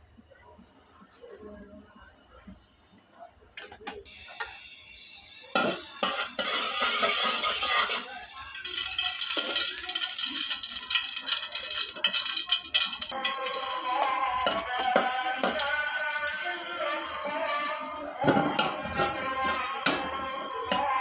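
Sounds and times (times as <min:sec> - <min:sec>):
food sizzling in pan: 0:04.1 - 0:21.0
utensils knocking against pan: 0:05.5 - 0:10.0, 0:10.9 - 0:21.0.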